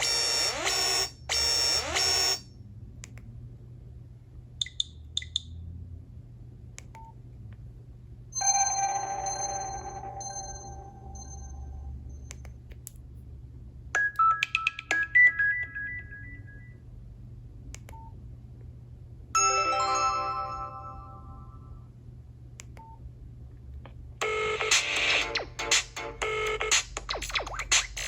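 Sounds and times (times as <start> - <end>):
phone alert chimes: 8.4 - 11.9
busy electronic tone: 8.4 - 12.2.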